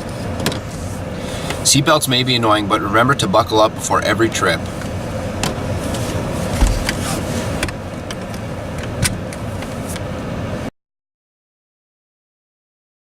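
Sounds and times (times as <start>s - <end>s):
car road noise inside cabin: 0.0s - 10.7s
low thump: 6.6s - 7.0s.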